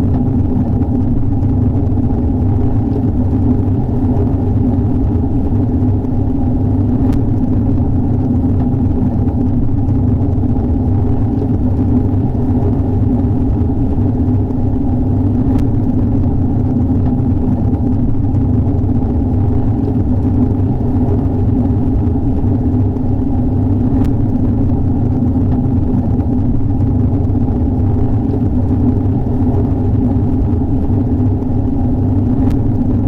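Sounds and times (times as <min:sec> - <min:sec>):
faint ticks: 0:06.8 - 0:09.6, 0:12.7 - 0:33.0.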